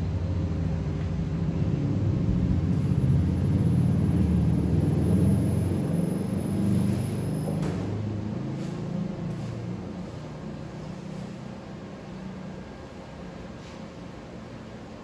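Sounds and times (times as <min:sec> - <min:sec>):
low machine rumble: 0:00.0 - 0:07.1.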